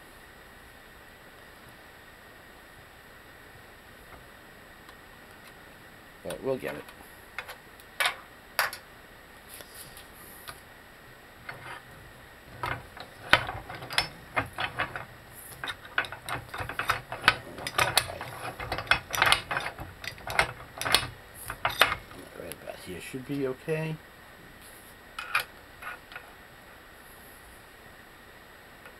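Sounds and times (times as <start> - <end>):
metal tools clicking: 12.6 - 22.1.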